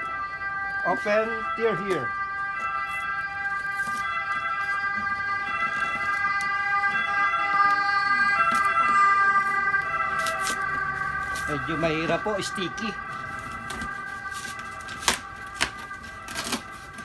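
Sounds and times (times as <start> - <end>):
steady high whine: 0.0 - 17.0
packaging ripping and crinkling: 13.3 - 17.0.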